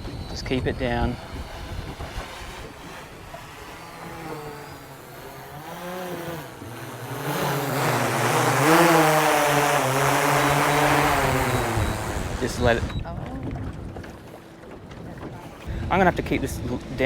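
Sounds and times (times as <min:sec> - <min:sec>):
drone propellers whirring: 0:00.0 - 0:13.1.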